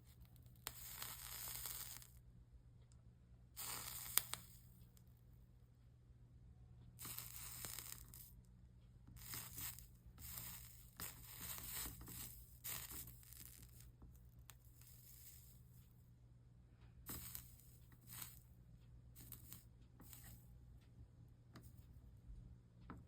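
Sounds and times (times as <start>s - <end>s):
flux sizzling under soldering iron: 0.0s - 2.2s, 3.6s - 5.1s, 7.0s - 8.4s, 9.0s - 15.9s, 17.0s - 18.5s, 19.1s - 20.5s.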